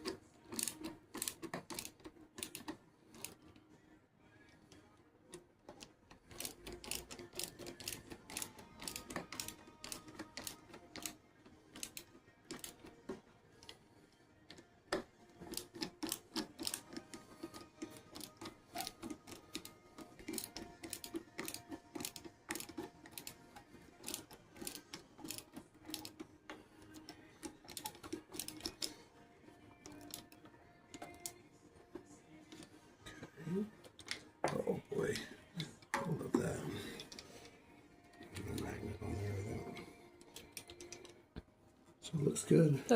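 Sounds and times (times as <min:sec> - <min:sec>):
ratcheting hand tool clicking: 0:00.0 - 0:03.4, 0:05.8 - 0:13.0, 0:14.5 - 0:29.0, 0:29.8 - 0:31.4, 0:40.2 - 0:41.2.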